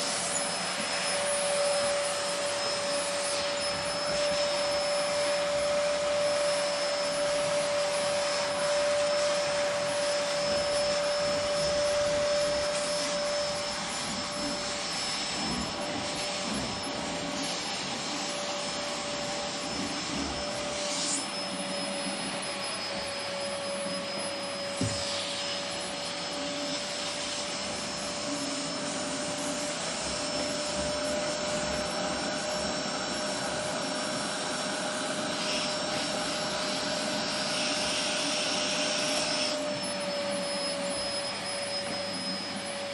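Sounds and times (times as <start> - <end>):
vacuum cleaner running: 0.0 - 42.9.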